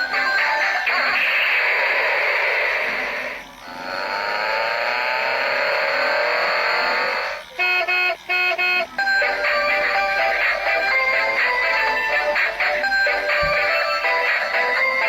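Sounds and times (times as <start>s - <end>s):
electronic beeping melody: 0.0s - 1.2s, 7.6s - 15.0s.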